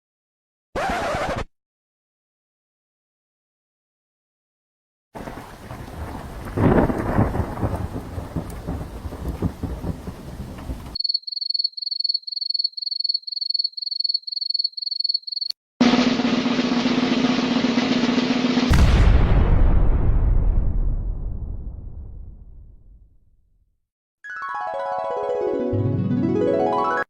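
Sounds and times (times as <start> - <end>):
rain: 5.2 - 11.0
thunderclap: 5.2 - 11.0, 15.9 - 23.0
loud blast: 15.8 - 23.0.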